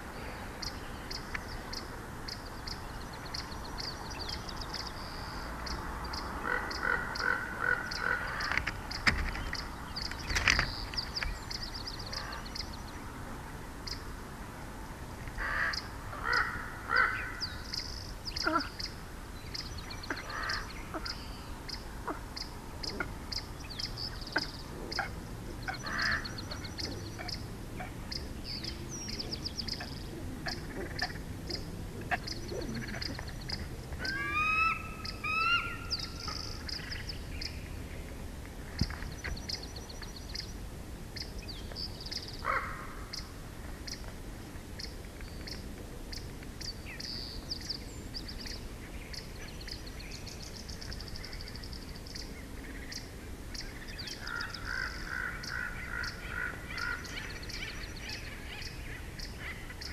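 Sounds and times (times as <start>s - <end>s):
lower bird call: 15.4s - 37.7s.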